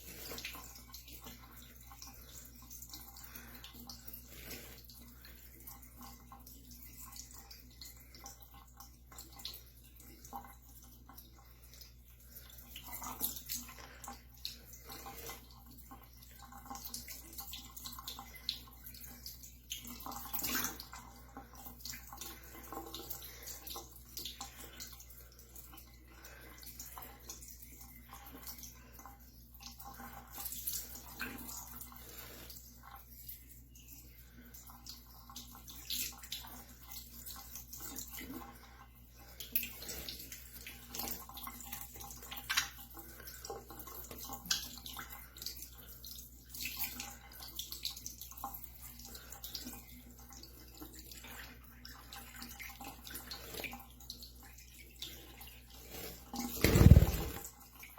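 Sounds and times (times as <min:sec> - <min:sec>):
bird splashing water in hand: 0:56.5 - 0:57.5.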